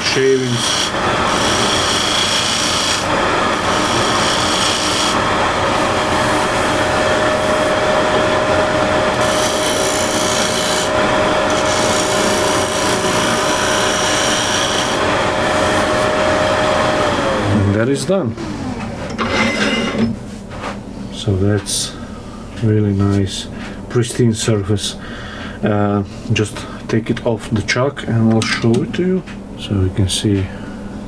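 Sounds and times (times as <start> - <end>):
scraper cutting spinning wood: 0.0 - 17.8
wood lathe motor whine: 0.0 - 19.7.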